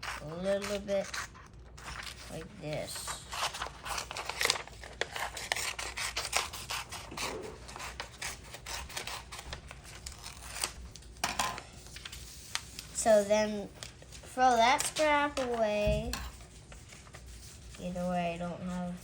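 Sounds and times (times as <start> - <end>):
scissors snipping paper: 0.0 - 11.0
paper rustling: 0.0 - 19.0.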